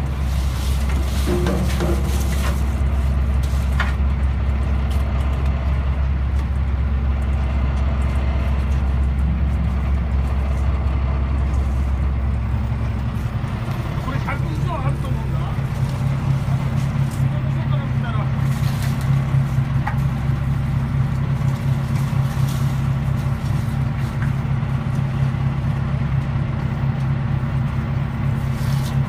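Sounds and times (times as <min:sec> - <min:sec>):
boat engine droning: 0:00.0 - 0:29.0.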